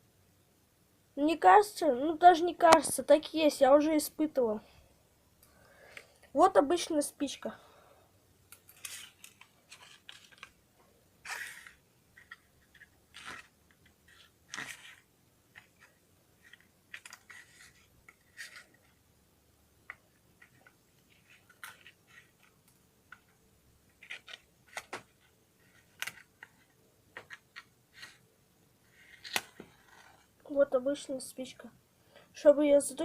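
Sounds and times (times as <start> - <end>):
matchbox clicks and scratching: 8.5 - 10.6, 11.2 - 18.9, 23.9 - 25.1, 29.0 - 30.3
match scrapes: 11.2 - 18.8, 28.9 - 30.3.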